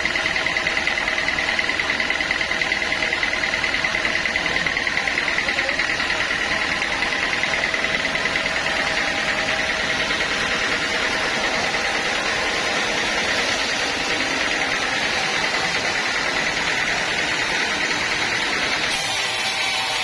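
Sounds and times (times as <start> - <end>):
band saw running: 0.0 - 20.0
high-pitched whine: 4.5 - 20.0.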